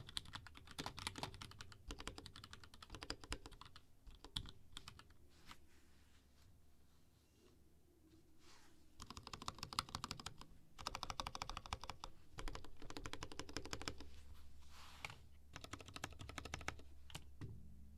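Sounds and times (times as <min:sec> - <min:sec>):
mechanical keyboard typing: 0:00.0 - 0:05.0, 0:09.0 - 0:14.0, 0:15.0 - 0:17.3.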